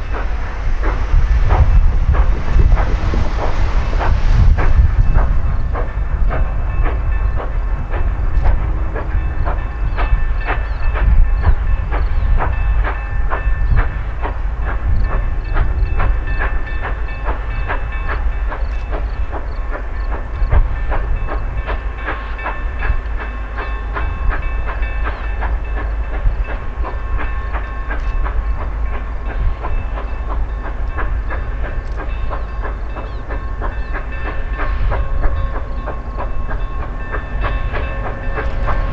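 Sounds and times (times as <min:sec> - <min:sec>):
steady tones: 0:00.0 - 0:11.0, 0:31.2 - 0:38.9
train low rumble: 0:00.0 - 0:38.9.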